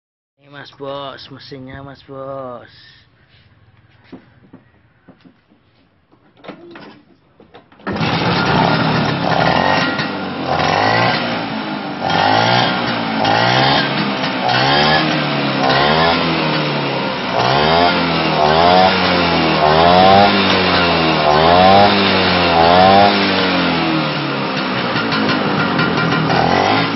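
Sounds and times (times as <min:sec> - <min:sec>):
scooter engine revving: 0:03.1 - 0:05.4, 0:07.7 - 0:26.9.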